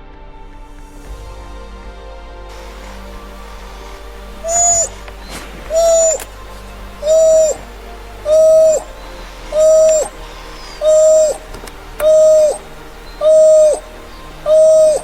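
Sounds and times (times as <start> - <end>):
animal hooting: 4.4 - 15.0.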